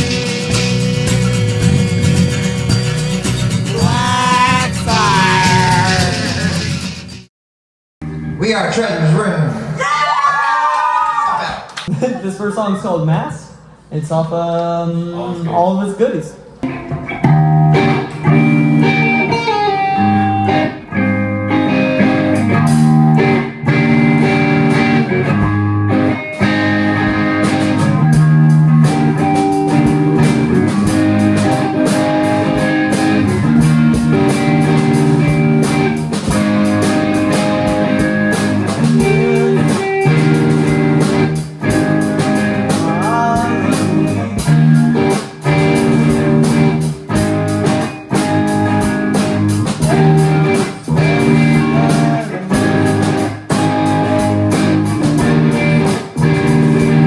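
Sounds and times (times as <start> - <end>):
electric guitars: 0.0 - 7.1, 16.6 - 57.0
steady drum beat: 0.0 - 7.3, 26.6 - 57.0.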